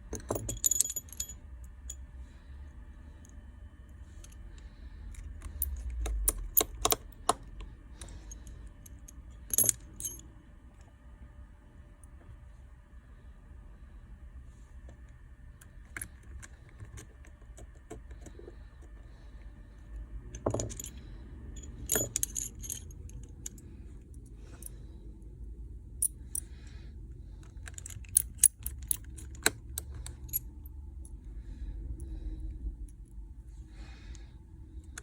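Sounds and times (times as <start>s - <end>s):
small metal tools clinking: 0.1s - 2.0s, 8.0s - 10.2s, 20.4s - 23.6s, 27.6s - 30.6s.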